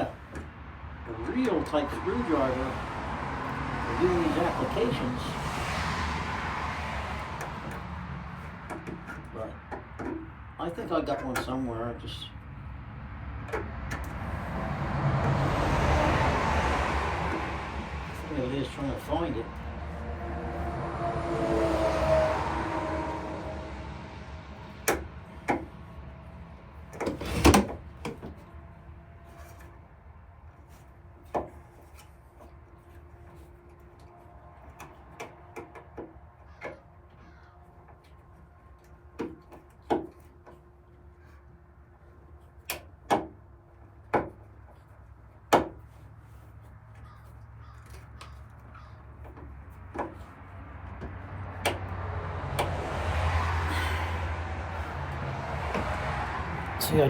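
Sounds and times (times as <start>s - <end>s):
hand tools knocking on wood: 8.6s - 10.3s, 44.1s - 44.4s.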